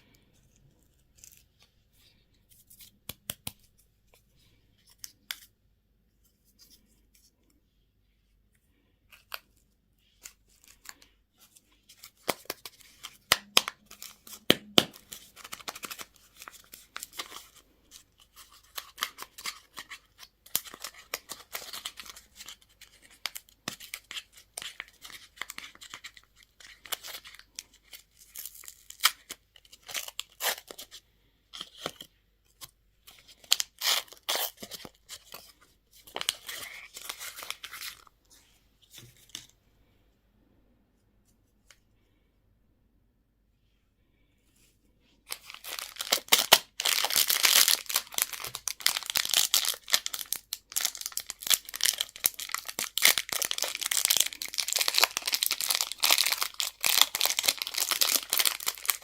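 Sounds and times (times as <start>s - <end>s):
plastic wrappers crinkling: 45.3s - 59.0s.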